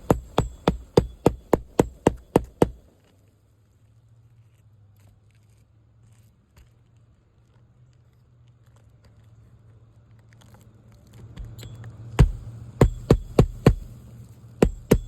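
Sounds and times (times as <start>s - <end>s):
hammering nails into shingle: 0.0s - 2.8s, 12.2s - 14.0s, 14.6s - 15.0s
steady low hum: 0.0s - 2.8s, 12.2s - 15.0s.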